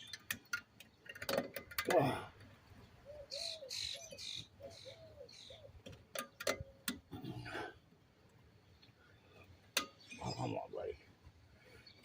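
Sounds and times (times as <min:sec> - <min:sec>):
sharp metal clicks: 0:00.0 - 0:02.0.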